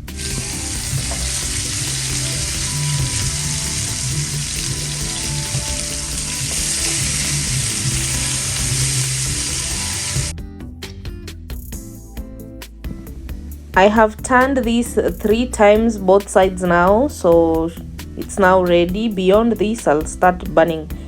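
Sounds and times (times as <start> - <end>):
ribs sizzling in a hot pan: 0.0 - 10.3.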